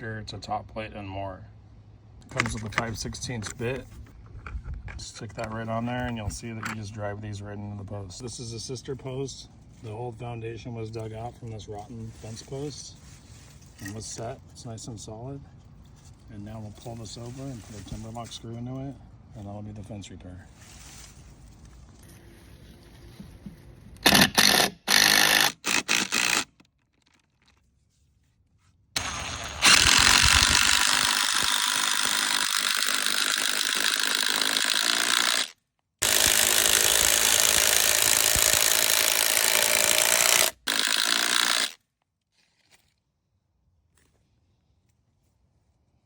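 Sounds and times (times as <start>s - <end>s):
power driver driving screw into wood: 24.0s - 26.7s, 29.0s - 41.8s.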